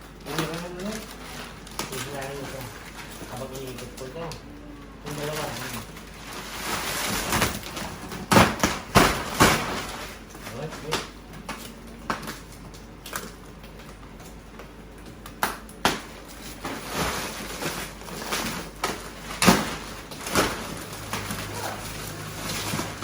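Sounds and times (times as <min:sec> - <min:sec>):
plastic wrapping crinkling: 0:00.0 - 0:23.0
sharp cracks and knocks: 0:05.5 - 0:23.0.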